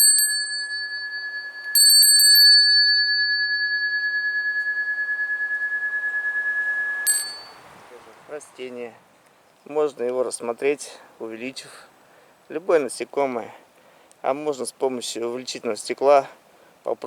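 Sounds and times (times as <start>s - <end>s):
bell stopped with clink: 0.0s - 4.9s, 7.1s - 7.7s
metal bell ringing: 0.0s - 5.9s, 7.0s - 7.7s.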